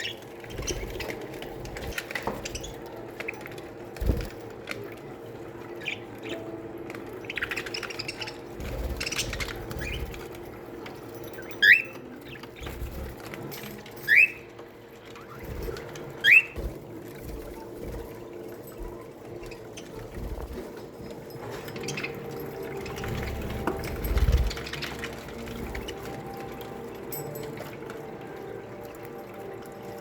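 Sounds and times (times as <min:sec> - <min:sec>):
budgerigars chirping: 0:11.5 - 0:12.5, 0:16.2 - 0:16.6.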